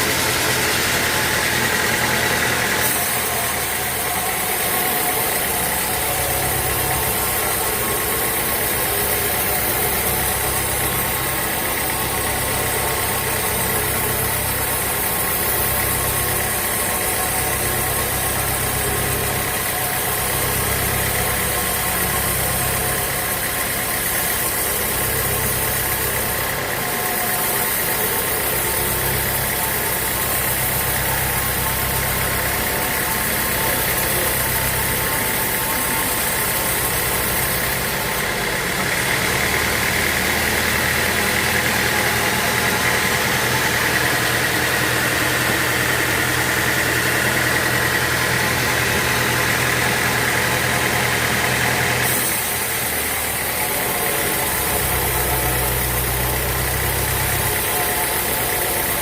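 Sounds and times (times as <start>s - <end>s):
sawmill machinery humming: 0.0s - 59.0s.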